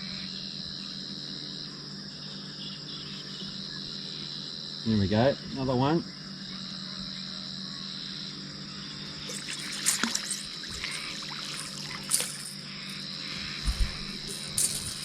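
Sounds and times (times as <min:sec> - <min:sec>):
insects chirring: 0:00.0 - 0:15.0
fish splashing in water: 0:09.2 - 0:12.7.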